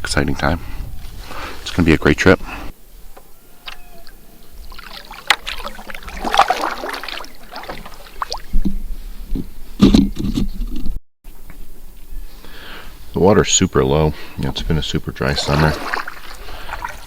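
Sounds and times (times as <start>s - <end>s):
paddle splashing in water: 3.7s - 8.8s, 15.2s - 17.0s.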